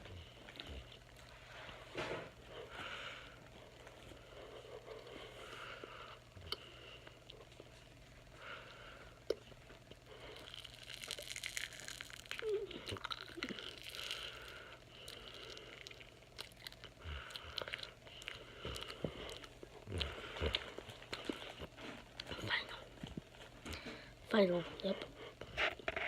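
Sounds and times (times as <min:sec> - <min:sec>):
wet mouth chewing noises: 0:09.2 - 0:23.8.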